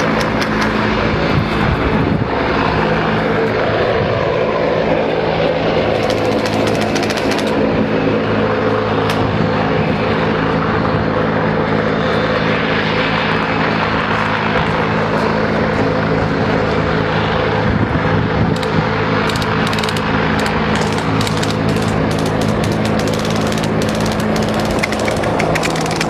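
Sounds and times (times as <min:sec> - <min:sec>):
sharp clicks: 0:00.0 - 0:00.8, 0:06.0 - 0:07.6, 0:18.6 - 0:26.0
helicopter rotor and turbine drone: 0:00.0 - 0:26.0.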